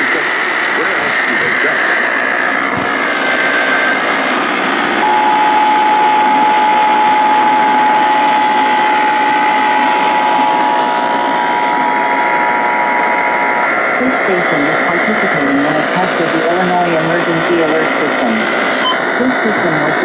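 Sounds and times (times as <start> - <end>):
radio static hiss: 0.0 - 7.1, 7.8 - 20.0
two-tone alert signal: 18.4 - 19.4.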